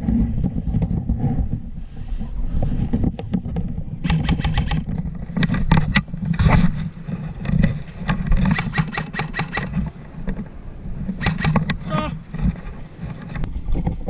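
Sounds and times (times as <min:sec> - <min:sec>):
handling rumble: 0:00.0 - 0:14.0
wind on microphone: 0:00.0 - 0:14.0
airsoft gun firing: 0:04.0 - 0:04.8, 0:08.5 - 0:09.8, 0:11.2 - 0:11.7.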